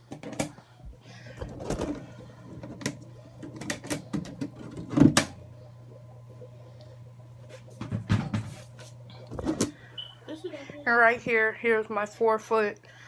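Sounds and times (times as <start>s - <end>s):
clicks and knocks of handling: 0.0s - 0.6s, 2.6s - 5.3s
steady low hum: 0.1s - 13.0s.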